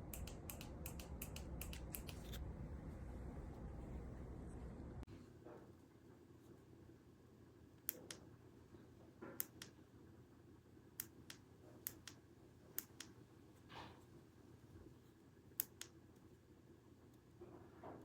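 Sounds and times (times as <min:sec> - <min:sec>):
switch clicking: 0:00.1 - 0:02.2.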